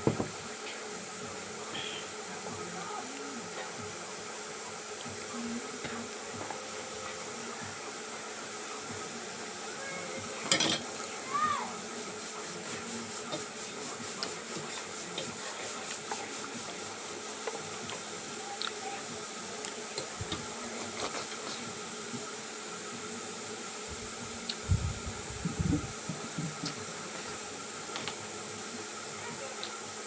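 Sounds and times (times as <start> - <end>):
steady hiss: 5.0 - 30.0
utensil and mouth eating sounds: 12.6 - 22.3, 23.8 - 27.5.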